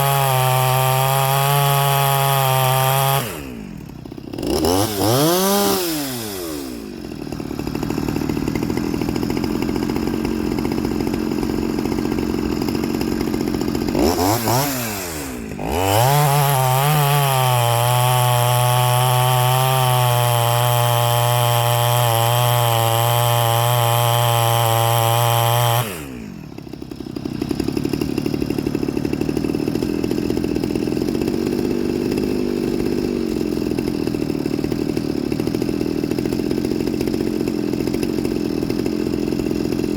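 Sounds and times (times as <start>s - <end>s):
chainsaw idling and revving: 0.0s - 39.9s.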